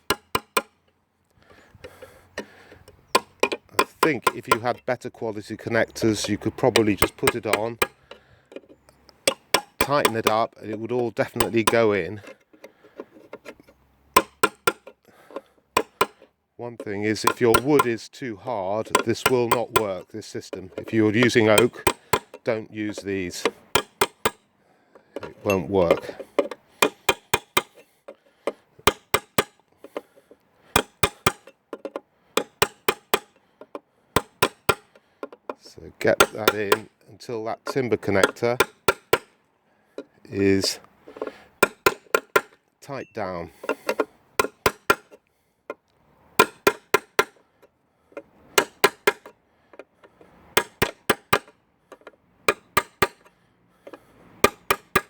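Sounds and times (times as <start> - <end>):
hammer tapping metal teeth: 0.0 - 0.7, 1.8 - 4.9, 5.5 - 12.7, 13.3 - 18.1, 18.8 - 24.4, 25.1 - 30.1, 30.7 - 37.0, 37.7 - 39.4, 40.6 - 45.8, 46.4 - 47.4, 48.2 - 49.4, 50.1 - 53.3, 53.9 - 55.0.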